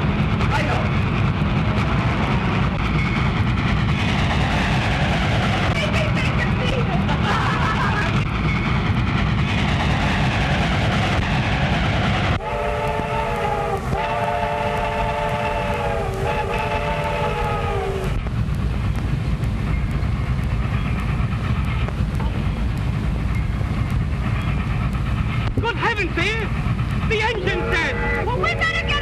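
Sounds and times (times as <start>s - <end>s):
train rumbling: 0.0s - 29.0s
train whistle blowing: 12.4s - 18.1s.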